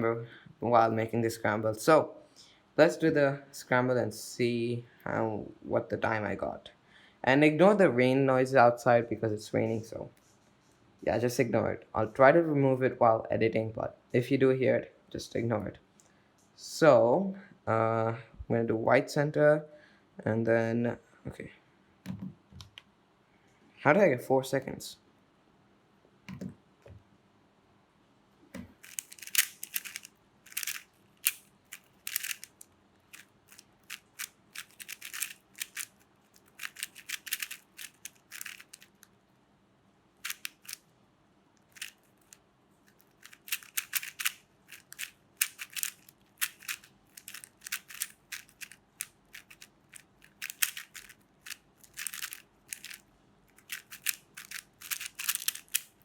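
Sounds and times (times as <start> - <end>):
puzzle cube plastic clicking: 28.7 - 39.1, 40.2 - 40.8, 41.6 - 56.0.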